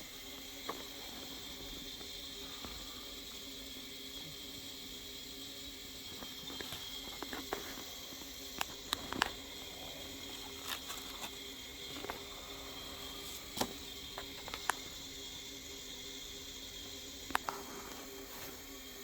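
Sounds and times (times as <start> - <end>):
packaging being handled: 8.6 - 14.8.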